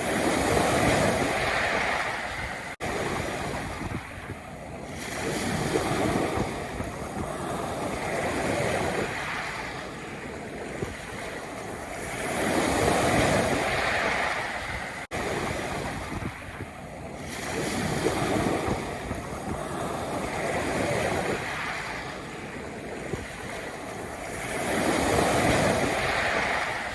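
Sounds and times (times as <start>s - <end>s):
waves breaking on pebbles: 0.0s - 4.2s, 5.0s - 16.5s, 17.2s - 26.9s.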